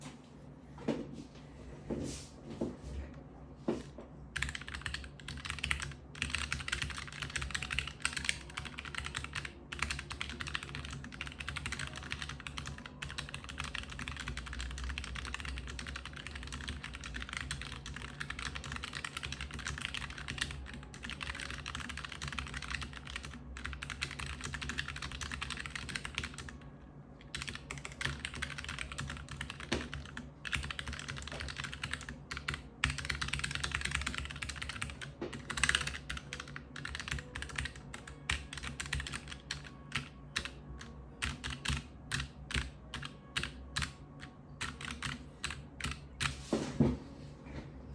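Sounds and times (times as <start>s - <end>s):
mechanical keyboard typing: 4.4s - 26.6s, 27.2s - 46.4s.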